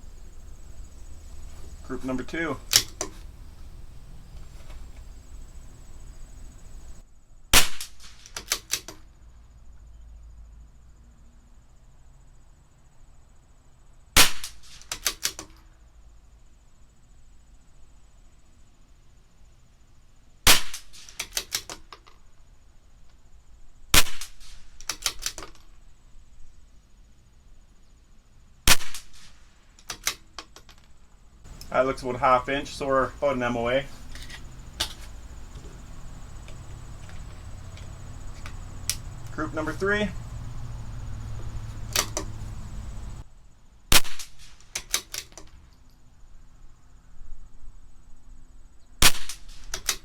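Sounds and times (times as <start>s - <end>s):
metallic clicks of rifle bolt: 2.3s - 3.3s, 7.8s - 9.1s, 14.4s - 15.7s, 20.8s - 22.2s, 24.2s - 25.8s, 28.9s - 31.8s, 34.0s - 35.8s, 41.9s - 42.3s, 44.0s - 45.9s, 49.2s - 50.0s
rifle shots: 7.6s - 8.9s, 14.2s - 15.4s, 20.5s - 21.7s, 24.0s - 25.4s, 28.7s - 30.3s, 43.9s - 45.3s, 49.0s - 50.0s.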